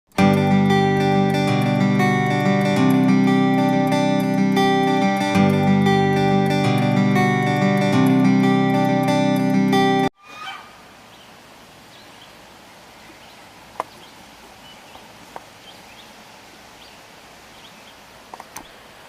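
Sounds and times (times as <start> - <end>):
acoustic guitar music: 0.1 - 10.1.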